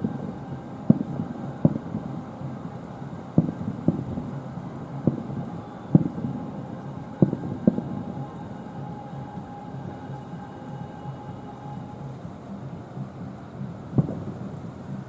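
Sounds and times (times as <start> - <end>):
fireworks booming: 0.0 - 2.2, 3.3 - 8.7, 14.0 - 14.4
steady low rumble: 0.0 - 15.0.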